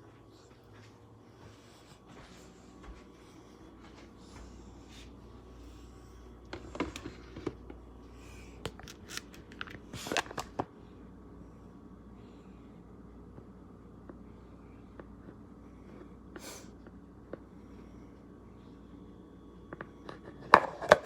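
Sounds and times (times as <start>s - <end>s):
steady low hum: 0.0s - 21.0s
food packages crinkling: 8.7s - 10.7s.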